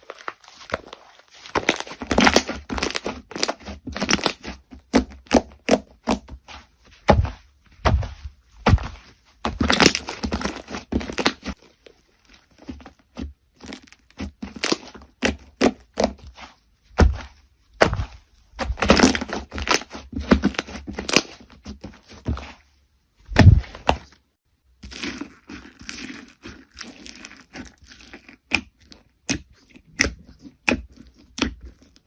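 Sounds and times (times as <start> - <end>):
crunchy slime crackling and popping: 0.0 - 6.3, 9.5 - 16.4, 17.8 - 21.8, 24.7 - 32.0.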